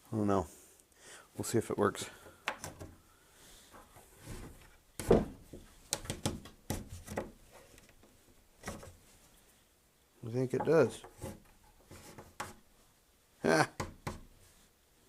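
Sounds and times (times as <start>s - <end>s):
clicks and rubbing of wood: 2.2s - 3.0s, 3.7s - 9.0s, 10.6s - 12.7s.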